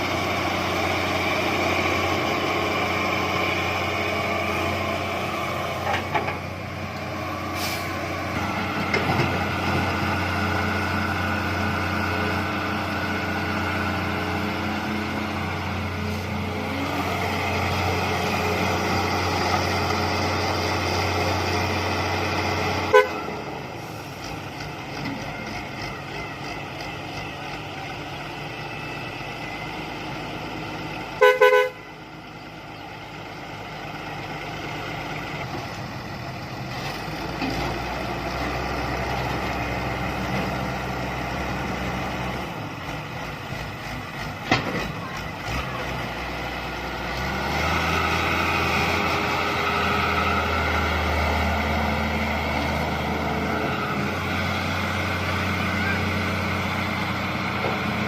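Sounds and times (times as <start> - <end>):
excavator diesel engine running: 0.0 - 58.0
horn toot: 22.9 - 23.2, 31.2 - 31.8.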